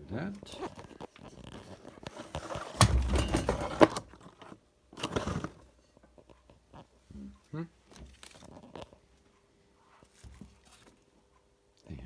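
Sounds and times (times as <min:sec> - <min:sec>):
metal bicycle parts clattering: 0:02.8 - 0:04.0.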